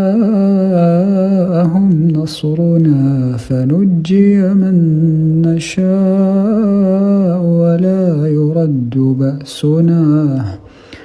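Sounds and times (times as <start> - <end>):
man chanting unaccompanied: 0.0 - 10.6
breath: 10.6 - 11.0.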